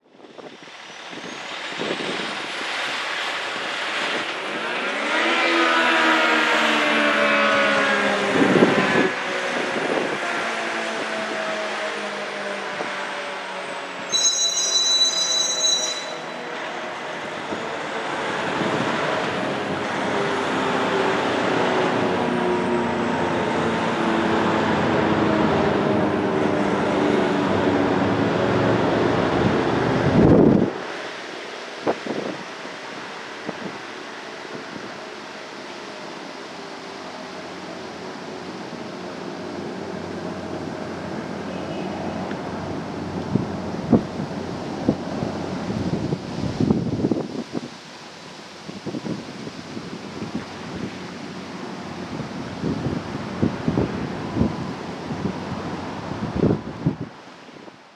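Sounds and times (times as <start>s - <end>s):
rotating siren wailing: 4.4s - 30.8s
brief high tone: 14.0s - 16.7s.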